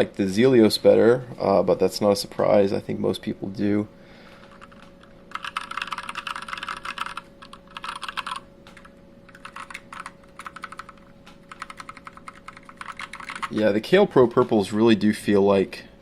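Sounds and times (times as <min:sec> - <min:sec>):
mechanical keyboard clicking: 0:04.7 - 0:13.6.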